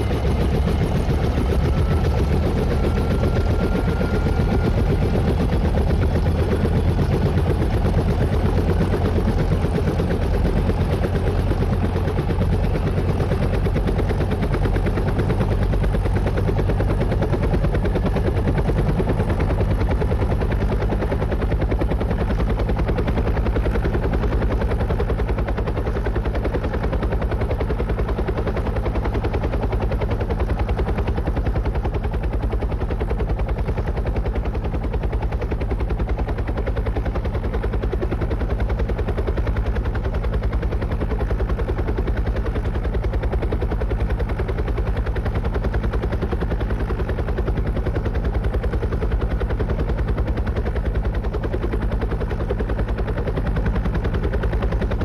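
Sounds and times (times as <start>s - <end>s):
helicopter engine drone: 0.0s - 55.0s
helicopter rotor chopping: 0.0s - 55.0s.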